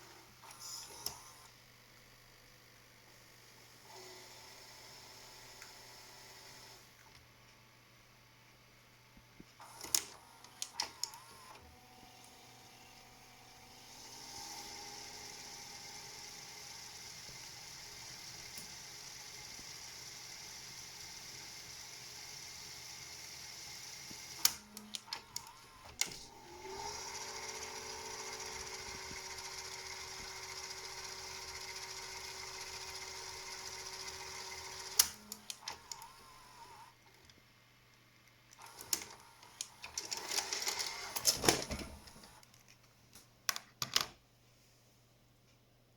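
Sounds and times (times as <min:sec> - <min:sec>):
video recorder tape transport whirring: 0:00.0 - 0:07.7, 0:08.6 - 0:37.4, 0:38.4 - 0:42.5
sharp mechanical clicks: 0:24.1 - 0:26.3, 0:32.8 - 0:36.2
motor humming: 0:24.4 - 0:36.8.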